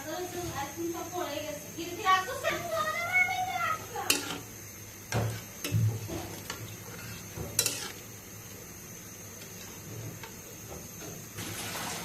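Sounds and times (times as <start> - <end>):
light sizzle: 0.0 - 12.0
utensil scraping in a pot: 5.1 - 8.2.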